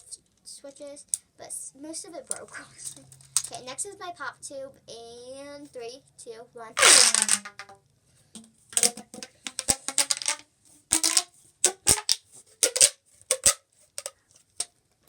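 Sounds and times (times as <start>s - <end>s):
plastic pop tube snapping: 6.8s - 7.8s, 8.4s - 14.7s.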